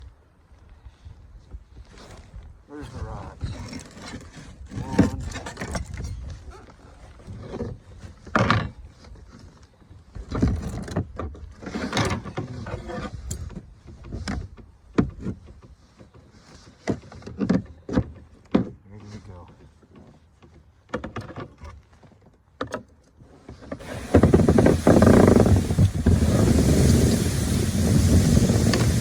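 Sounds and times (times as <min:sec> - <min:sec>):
gear knocking and scraping: 0:23.8 - 0:29.0.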